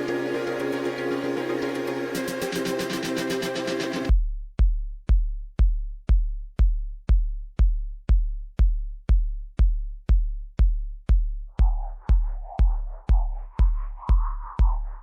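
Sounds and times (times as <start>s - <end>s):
faint synth: 0.0s - 4.1s
drum machine kick drum: 4.1s - 15.0s.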